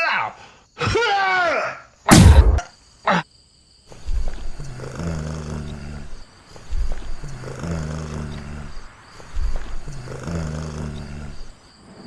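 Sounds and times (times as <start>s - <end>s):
loud bang: 2.1s - 2.6s.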